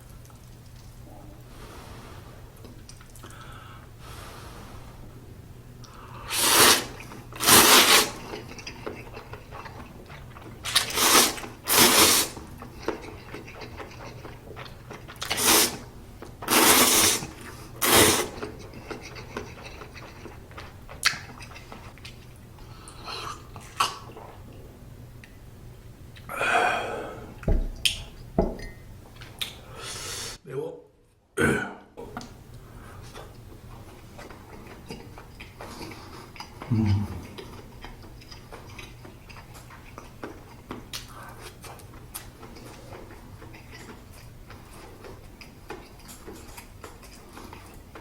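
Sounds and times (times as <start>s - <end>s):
chewing: 5.8s - 25.4s, 32.0s - 48.0s
noodles slurping: 5.9s - 24.4s.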